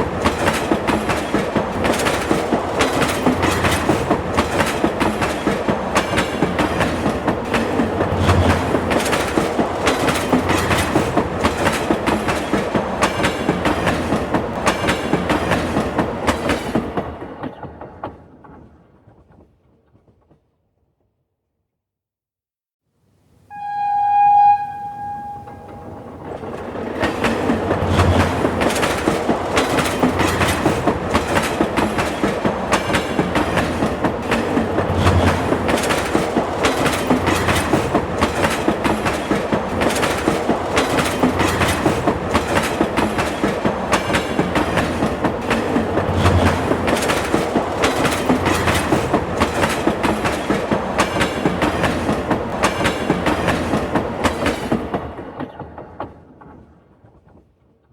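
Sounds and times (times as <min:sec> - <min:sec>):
subway train running: 0:00.0 - 0:19.4, 0:23.5 - 0:57.9
wheels clicking over rail joints: 0:00.0 - 0:20.4, 0:25.6 - 0:57.8
horn tone: 0:23.5 - 0:26.4.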